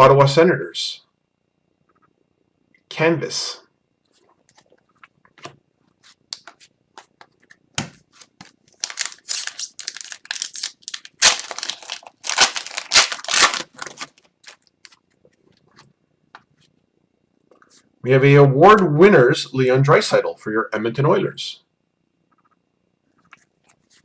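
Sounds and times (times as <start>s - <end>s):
cards shuffled: 5.4s - 14.6s
foil wrapper crinkling and tearing: 8.2s - 15.0s.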